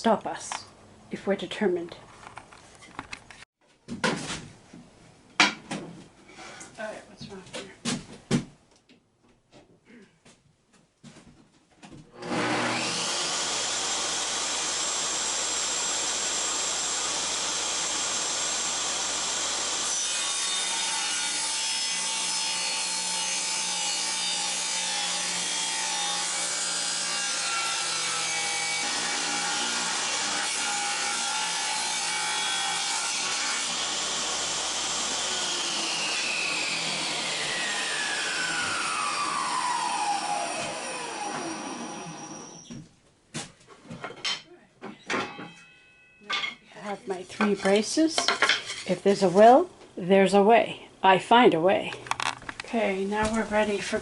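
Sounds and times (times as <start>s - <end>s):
saw blade spinning down: 12.2s - 19.8s, 34.7s - 42.6s
table saw ripping wooden board: 12.2s - 42.6s
table saw running: 12.2s - 42.6s.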